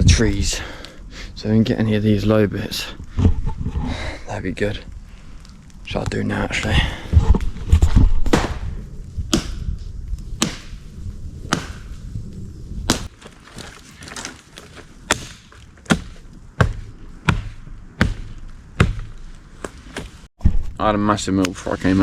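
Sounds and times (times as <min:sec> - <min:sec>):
branches being chopped: 0:07.8 - 0:12.0, 0:12.8 - 0:20.3.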